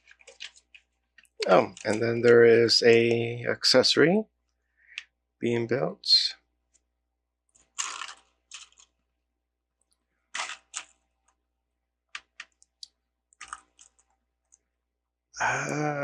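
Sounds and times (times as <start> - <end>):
plastic pieces rattling: 0.0 - 2.0.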